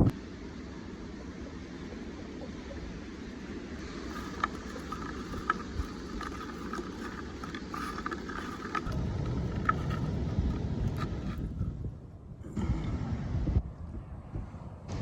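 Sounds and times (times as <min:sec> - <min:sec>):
wind on microphone: 0:04.1 - 0:15.0.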